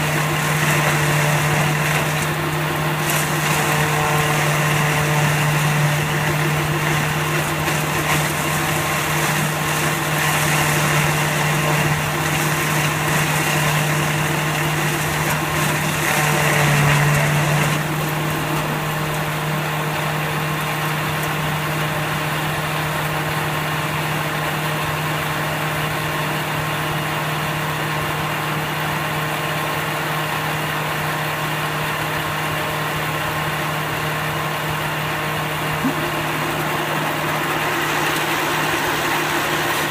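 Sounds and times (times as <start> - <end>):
baler machine humming: 0.0 - 22.3, 33.8 - 39.9
higher-pitched machine noise: 35.6 - 39.9.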